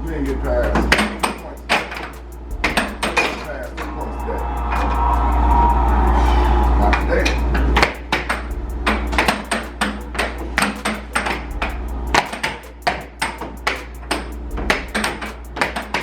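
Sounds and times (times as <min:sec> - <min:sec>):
steady low hum: 0:00.0 - 0:16.0
air hockey puck clacking: 0:12.2 - 0:16.0.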